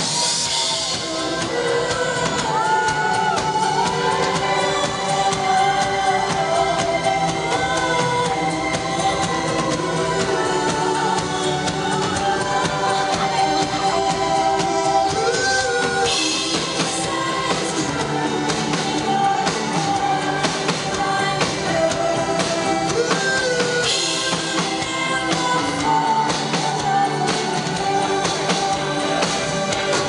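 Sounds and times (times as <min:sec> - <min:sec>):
driving drum kit: 0:00.0 - 0:30.0
person singing: 0:00.0 - 0:30.0
rock band music: 0:00.0 - 0:30.0.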